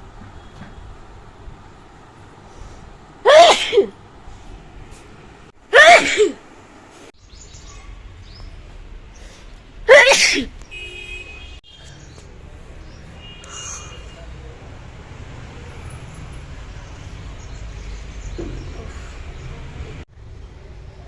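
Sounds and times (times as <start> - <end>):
person sneezing loudly: 3.3 - 4.0, 5.7 - 6.4, 9.9 - 10.5.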